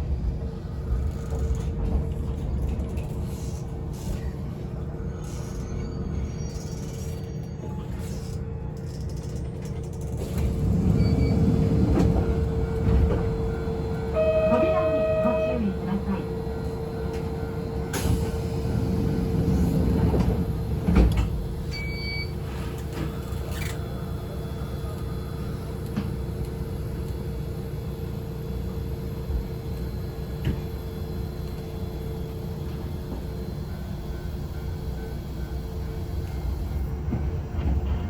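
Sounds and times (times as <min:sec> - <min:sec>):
railcar low hum: 0:00.0 - 0:38.0
train doors sliding shut: 0:10.2 - 0:25.0
short beep: 0:14.1 - 0:15.8.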